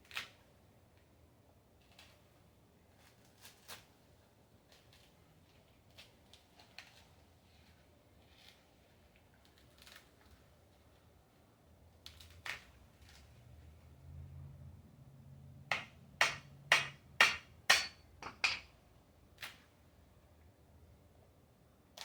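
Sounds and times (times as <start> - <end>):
hammer striking screwdriver: 15.7 - 18.7.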